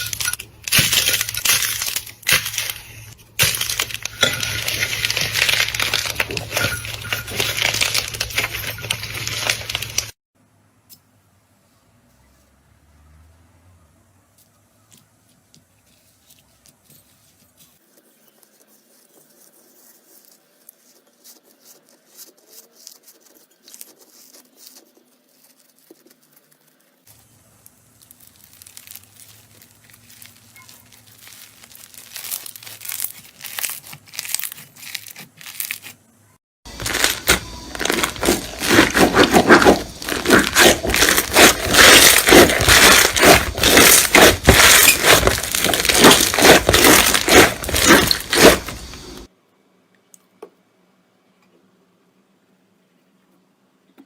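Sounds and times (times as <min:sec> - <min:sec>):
slime crackling and crunching: 0:00.0 - 0:10.2, 0:25.4 - 0:36.0, 0:36.7 - 0:49.3.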